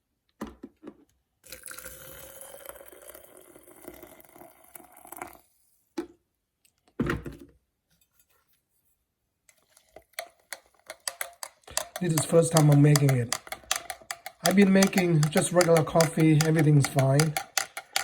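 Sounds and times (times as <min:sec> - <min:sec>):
hot water pouring into a pot: 0:01.4 - 0:05.5.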